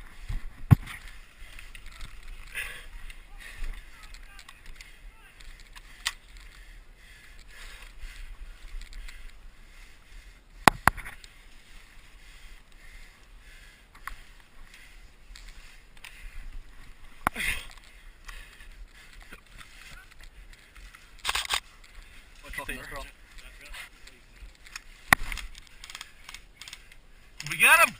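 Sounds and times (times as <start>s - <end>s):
rustling of player moving: 0.0s - 6.8s, 13.9s - 27.6s.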